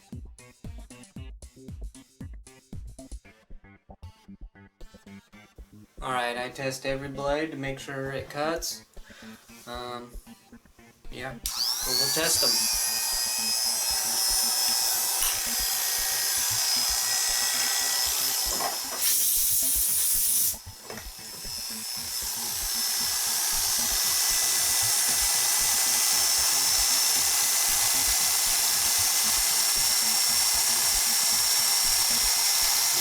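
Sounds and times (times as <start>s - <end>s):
electric hair clipper whining: 11.4s - 33.0s.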